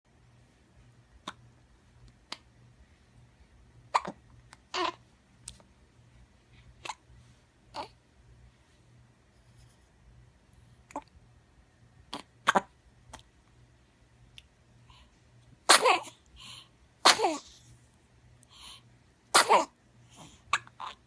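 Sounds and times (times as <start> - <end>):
person sneezing: 15.7 - 16.2, 17.0 - 17.5, 19.3 - 20.4.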